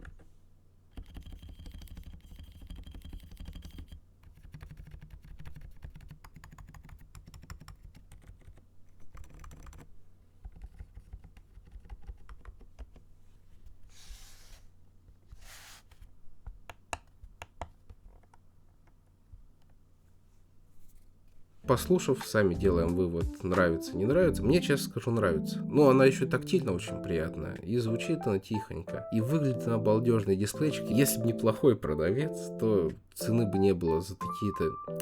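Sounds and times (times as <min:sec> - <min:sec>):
quiet keyboard keystrokes: 0:00.9 - 0:13.1.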